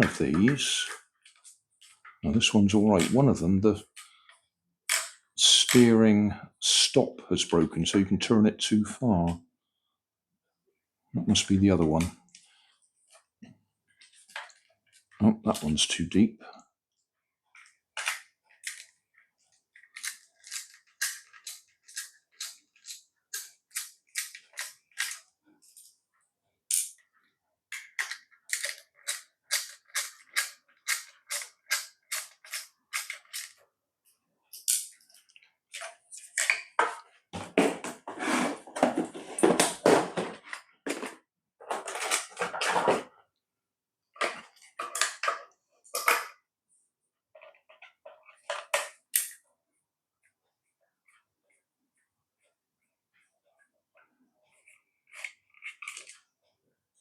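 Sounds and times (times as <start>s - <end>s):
scraping and rustling: 37.4s - 43.1s.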